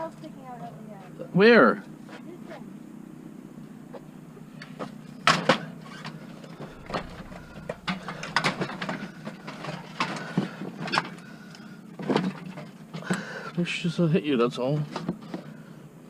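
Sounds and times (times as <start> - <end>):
low steady hum: 6.0 - 13.4
junk knocking and clattering: 6.6 - 10.6.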